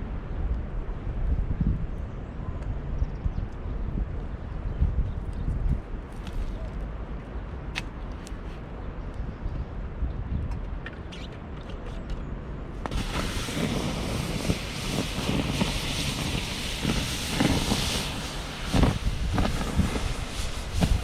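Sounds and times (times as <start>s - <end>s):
water hissing on hot embers: 12.8s - 21.0s.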